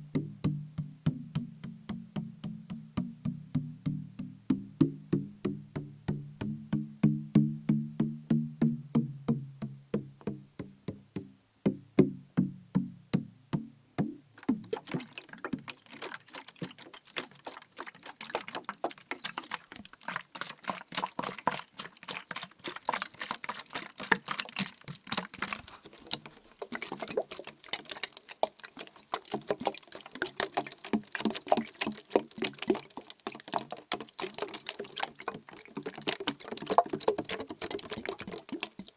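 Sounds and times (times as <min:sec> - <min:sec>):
tapping plastic bottle: 0:00.0 - 0:15.7, 0:33.5 - 0:38.9.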